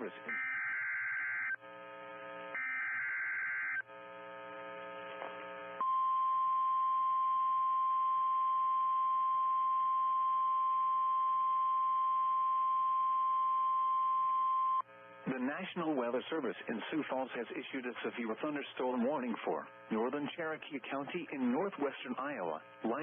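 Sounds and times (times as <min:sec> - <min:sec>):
steady warning alarm tone: 0:00.0 - 0:04.5
buzzing radio hum: 0:00.0 - 0:23.0.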